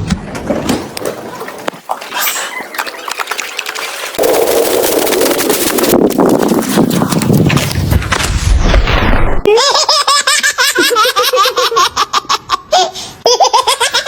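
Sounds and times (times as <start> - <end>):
noisy clatter: 4.2 - 9.4.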